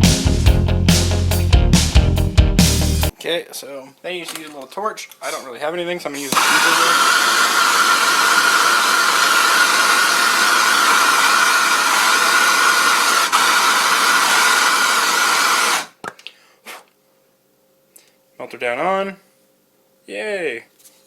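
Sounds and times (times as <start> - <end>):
hot-air blower whining: 6.2 - 16.0.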